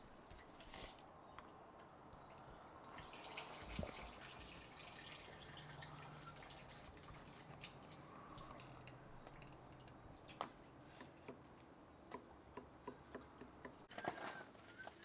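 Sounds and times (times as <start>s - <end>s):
drips: 2.2s - 13.8s.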